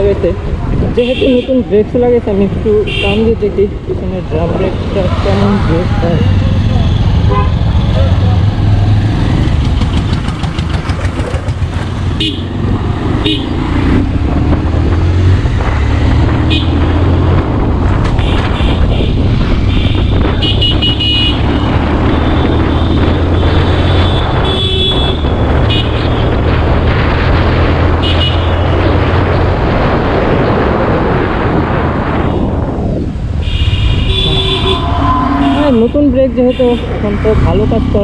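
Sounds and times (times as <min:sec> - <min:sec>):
wind and road noise: 0:00.0 - 0:38.0
motorcycle engine running: 0:06.2 - 0:15.9
vehicle horn toots: 0:07.2 - 0:08.1, 0:18.2 - 0:21.6, 0:22.2 - 0:26.1, 0:28.0 - 0:28.7, 0:33.4 - 0:36.9.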